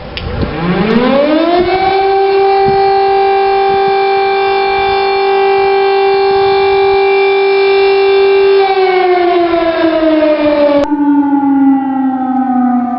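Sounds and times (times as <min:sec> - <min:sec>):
air raid siren: 0:00.0 - 0:12.9.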